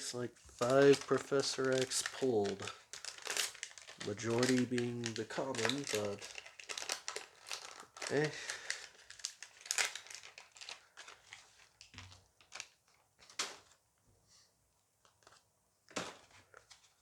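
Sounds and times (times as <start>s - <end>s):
foil pack crinkling and tearing: 0.6s - 13.8s.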